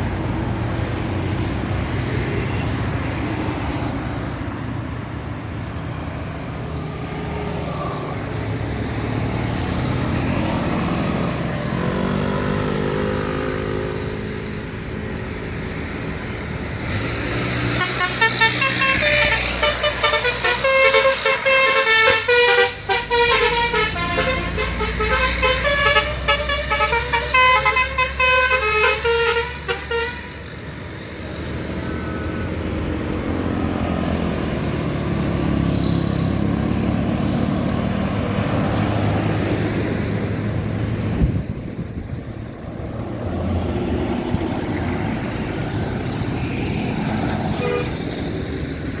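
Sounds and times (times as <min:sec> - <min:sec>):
bus engine running: 0:00.0 - 0:49.0
multi-tone bus horn melody: 0:17.6 - 0:30.6, 0:47.4 - 0:48.2.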